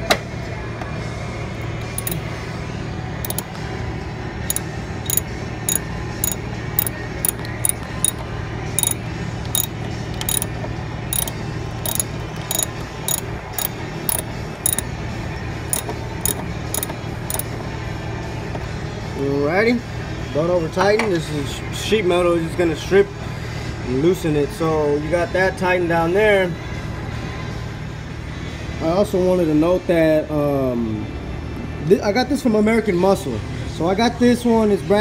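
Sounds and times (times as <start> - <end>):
hand ratchet clicking: 1.8 - 2.2, 3.2 - 3.4, 4.5 - 8.2, 8.8 - 9.0, 9.6 - 10.5, 11.2 - 14.8, 15.7 - 17.4.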